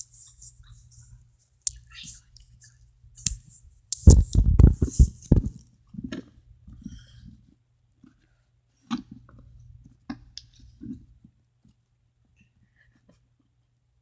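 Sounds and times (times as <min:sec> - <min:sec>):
hands working modelling dough: 0:00.0 - 0:14.0
thumps and pats on table: 0:04.0 - 0:05.6.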